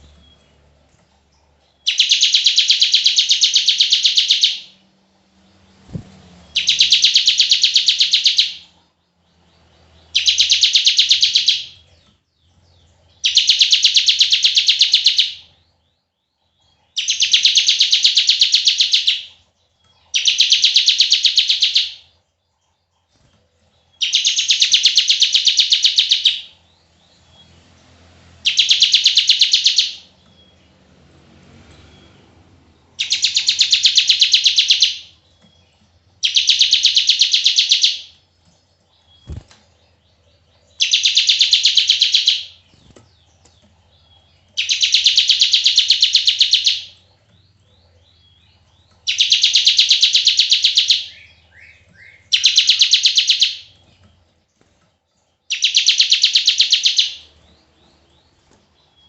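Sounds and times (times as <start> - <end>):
bird singing buzzing trills: 22.9 - 30.9, 31.5 - 59.0.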